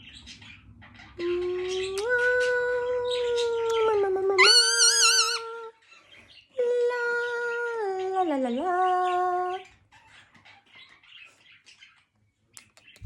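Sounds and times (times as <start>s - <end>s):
parrot singing along: 1.2s - 5.7s.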